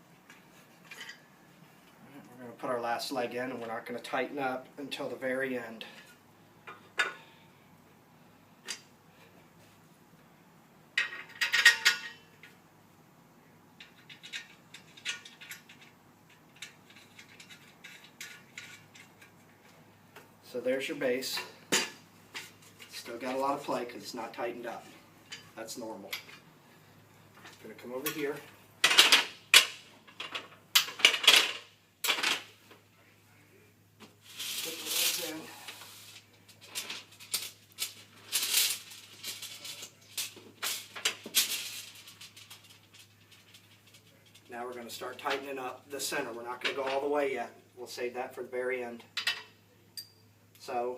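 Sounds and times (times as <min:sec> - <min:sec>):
metal parts rattling and scraping: 0:13.8 - 0:19.5, 0:28.1 - 0:32.5, 0:34.3 - 0:44.5.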